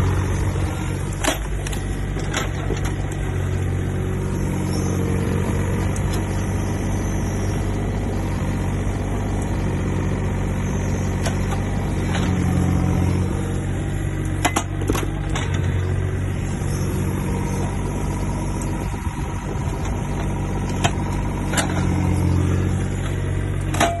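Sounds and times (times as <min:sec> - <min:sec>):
excavator diesel engine running: 0:00.0 - 0:24.0.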